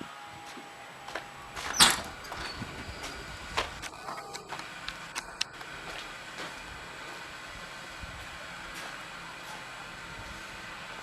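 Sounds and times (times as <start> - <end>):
gusty wind on microphone: 1.9 - 3.9.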